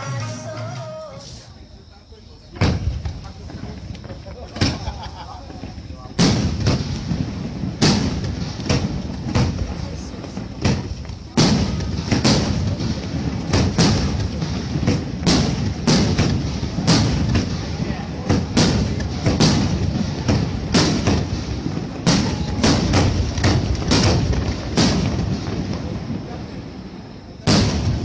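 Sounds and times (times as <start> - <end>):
fireworks exploding: 2.5 - 28.0.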